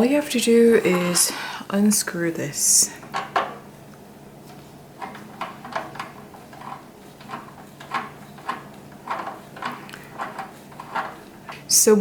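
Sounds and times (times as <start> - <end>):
screwdriver clicking and scraping: 5.0 - 11.4.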